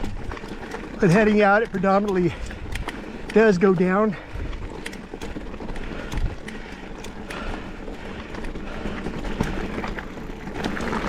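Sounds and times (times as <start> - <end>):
bike clacking and rattling: 0.0 - 11.0
tyres crunching on dirt: 0.0 - 11.0.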